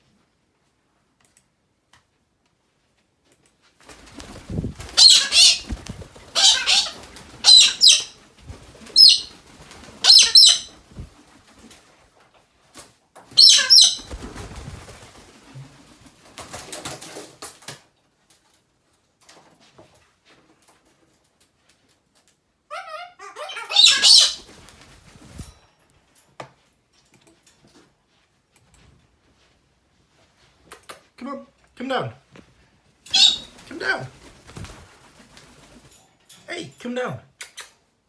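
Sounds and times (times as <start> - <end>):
bird wings flapping: 3.8 - 12.0, 12.8 - 17.8, 24.4 - 25.6, 33.1 - 36.0.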